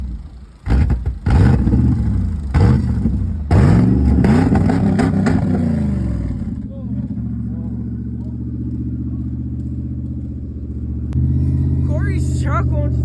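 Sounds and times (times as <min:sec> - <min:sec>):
engine backfiring bangs: 0:00.0 - 0:13.0.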